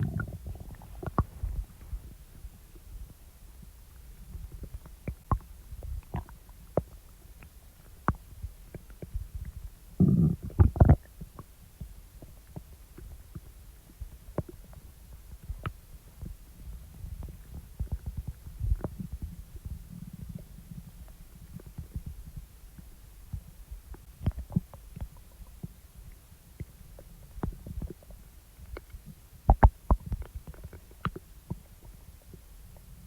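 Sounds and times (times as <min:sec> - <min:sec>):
stomach growling and gurgling: 0:00.0 - 0:02.2, 0:04.3 - 0:07.0, 0:09.0 - 0:11.5, 0:15.4 - 0:22.5.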